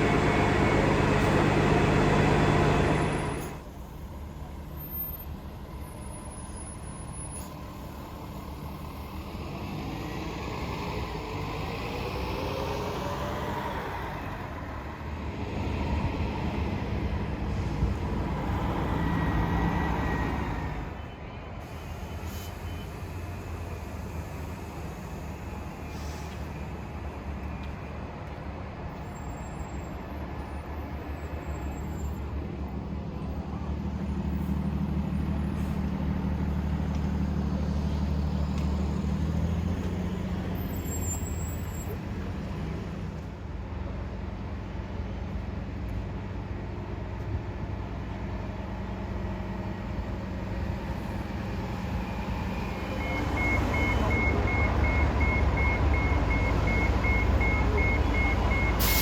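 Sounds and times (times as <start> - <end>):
bus engine rumbling: 0.0 - 59.0.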